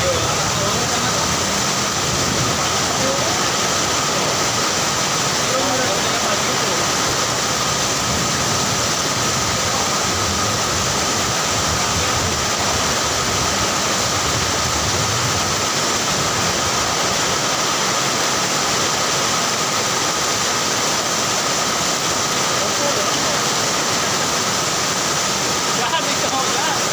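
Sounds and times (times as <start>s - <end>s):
heavy rain pouring: 0.0s - 26.9s.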